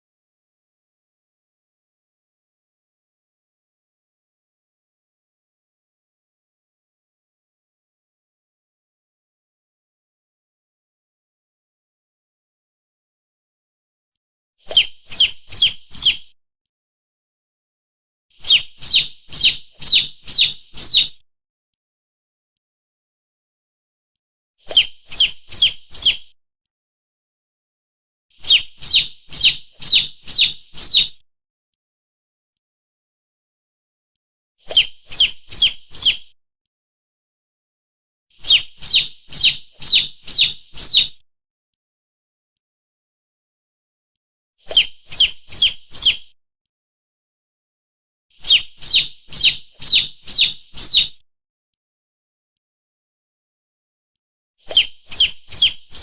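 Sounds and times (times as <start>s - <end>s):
high bird-like lure call: 14.7s - 16.3s, 18.4s - 21.2s, 24.7s - 26.3s, 28.4s - 31.2s, 34.7s - 36.3s, 38.4s - 41.2s, 44.7s - 46.3s, 48.4s - 51.2s, 54.7s - 56.0s.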